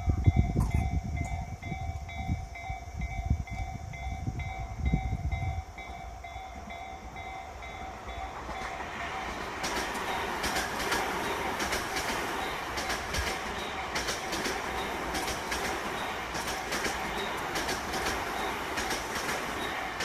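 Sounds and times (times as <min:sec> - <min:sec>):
electric train rumble: 0:00.0 - 0:20.0
level-crossing warning bell: 0:00.0 - 0:20.0
train wheels clacking over rails: 0:05.2 - 0:20.0.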